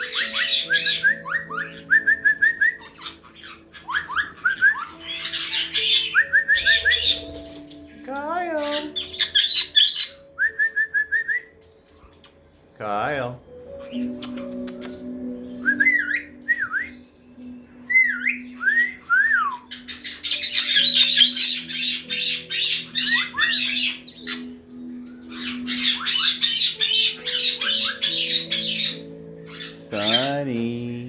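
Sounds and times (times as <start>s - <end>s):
parrots screeching: 0.0s - 7.8s, 8.6s - 10.3s, 17.9s - 24.6s, 25.2s - 30.4s
parrots whistling: 0.0s - 8.0s, 8.6s - 12.4s, 13.7s - 17.1s, 17.8s - 30.7s.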